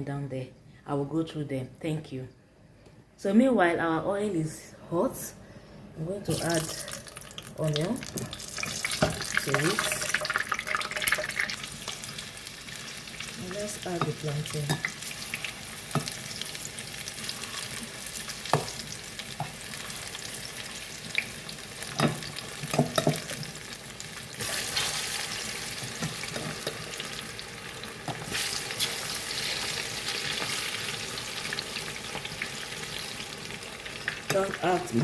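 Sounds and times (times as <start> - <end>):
plantain sizzling in oil: 6.3 - 35.0.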